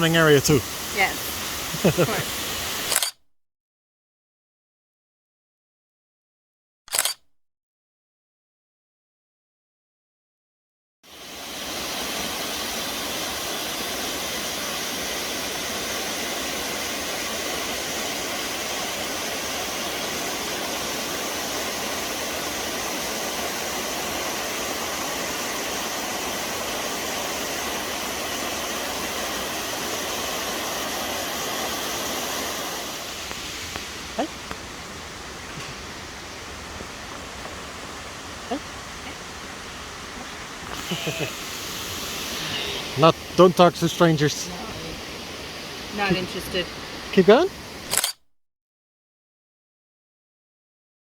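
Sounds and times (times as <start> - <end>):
waterfall roaring: 0.0 - 2.9, 11.1 - 47.8.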